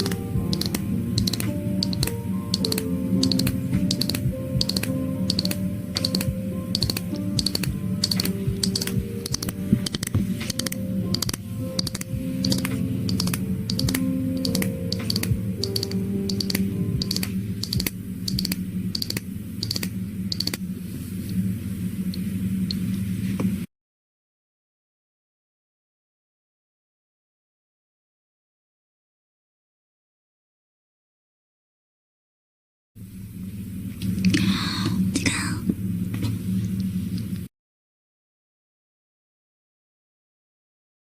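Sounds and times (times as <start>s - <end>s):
steady clicking beat: 0.0s - 20.6s
soft held music notes: 0.0s - 23.6s.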